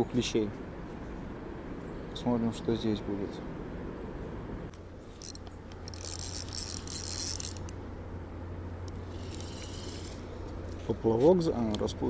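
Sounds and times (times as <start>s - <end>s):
fishing reel ticking: 5.2s - 7.8s.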